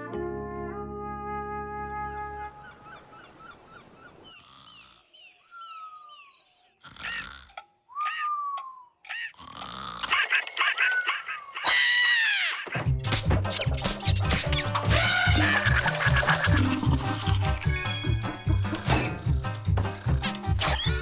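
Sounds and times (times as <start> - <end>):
falling whistle-like glides: 1.9 - 6.8
cartoon chirps: 4.3 - 12.8, 20.6 - 21.0
sharp clicks: 6.8 - 10.2
music with a steady beat: 16.6 - 20.8.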